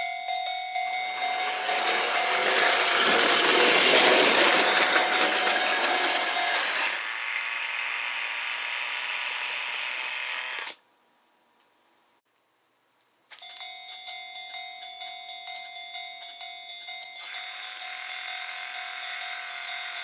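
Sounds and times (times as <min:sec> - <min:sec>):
crossing warning bell ringing: 0:00.0 - 0:07.0, 0:13.4 - 0:20.0
model train motor and wheels: 0:00.4 - 0:10.8, 0:16.4 - 0:20.0.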